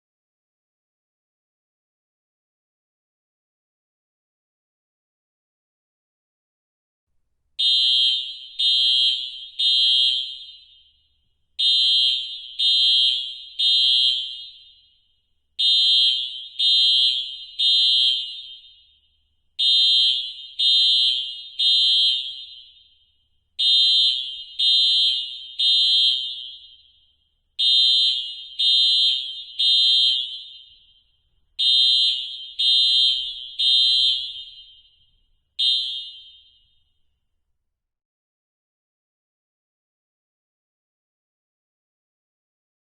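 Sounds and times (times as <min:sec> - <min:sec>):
fire alarm beeps: 0:07.6 - 0:37.1.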